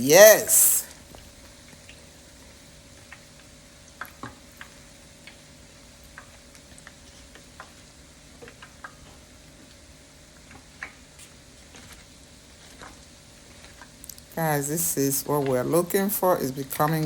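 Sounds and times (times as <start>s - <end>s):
faint hum: 0.0s - 1.0s
dough sizzling in hot oil: 0.1s - 15.2s
oil popping and crackling: 2.9s - 17.0s.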